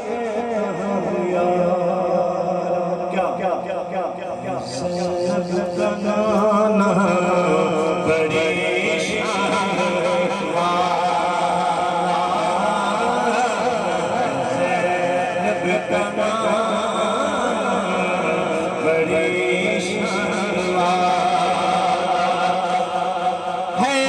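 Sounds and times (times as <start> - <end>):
men chanting devotional song: 0.0 - 24.0.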